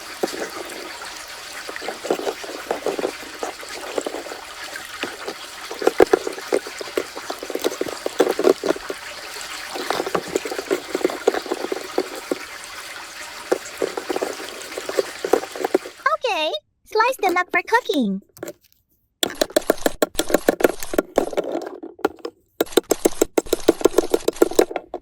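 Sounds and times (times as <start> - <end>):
plastic toys clicking and splashing: 0.0 - 16.2, 17.2 - 25.0
water trickling from toy faucet: 0.0 - 16.2.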